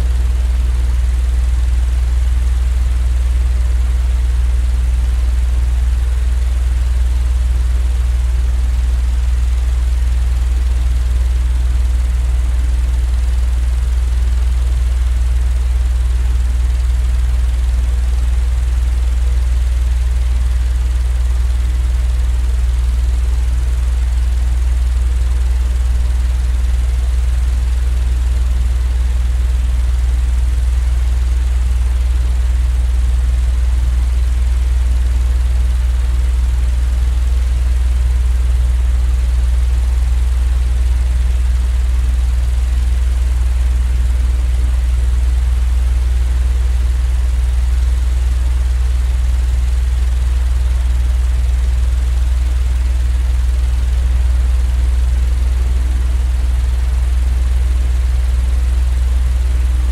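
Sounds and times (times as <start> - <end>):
low rumbling drone: 24.8 - 27.2.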